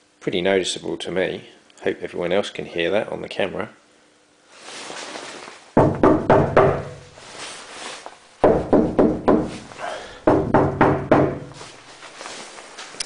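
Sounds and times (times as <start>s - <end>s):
knocking on ringing steel panel: 5.8s - 7.1s, 10.3s - 11.6s.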